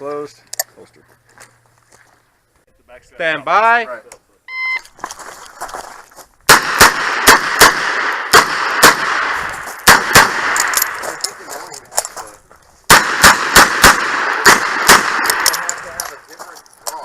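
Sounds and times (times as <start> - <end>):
shot timer beep: 4.5 - 4.8
revolver gunshots: 6.5 - 11.2, 12.9 - 16.0.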